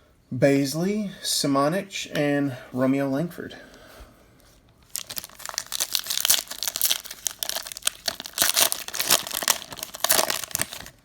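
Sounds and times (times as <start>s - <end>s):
plastic wrapper crinkling: 4.8s - 11.0s.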